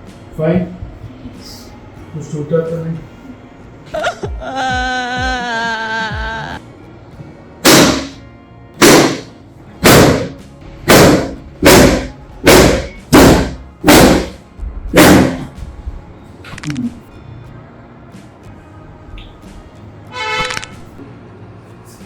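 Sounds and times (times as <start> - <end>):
heavy thumps: 7.6 - 8.2, 8.8 - 16.0.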